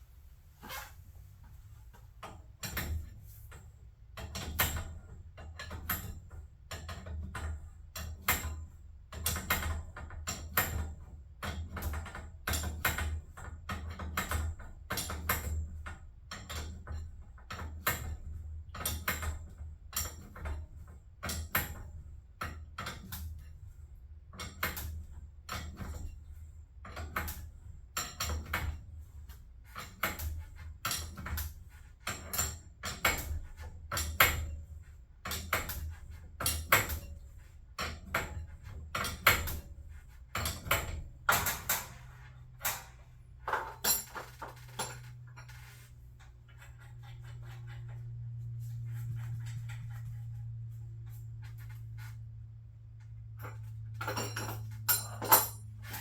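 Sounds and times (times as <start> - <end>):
sharp irregular clicks and knocks: 2.0 - 20.6
steady low hum: 37.0 - 56.0.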